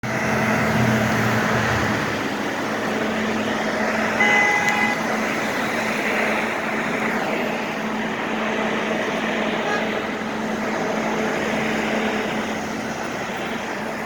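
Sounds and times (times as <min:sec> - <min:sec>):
ventilation exhaust blowing: 0:00.0 - 0:14.0
high-pitched squeal: 0:03.7 - 0:05.3.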